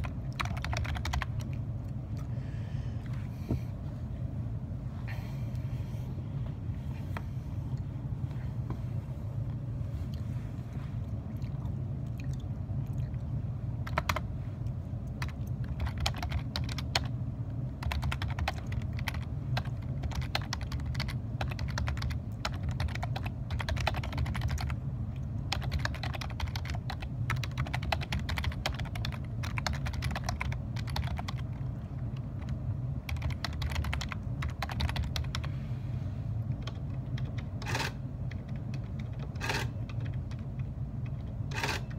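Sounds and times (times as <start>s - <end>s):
keyboard typing: 0.0s - 1.6s, 13.8s - 14.3s, 15.1s - 17.2s, 17.8s - 24.8s, 25.5s - 35.5s, 36.5s - 41.9s
low hum: 0.0s - 41.9s.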